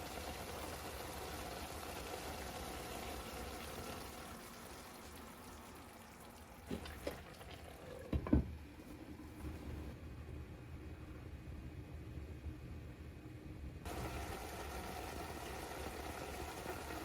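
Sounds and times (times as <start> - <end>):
food sizzling in a pan: 0.0 - 6.3, 13.9 - 17.0.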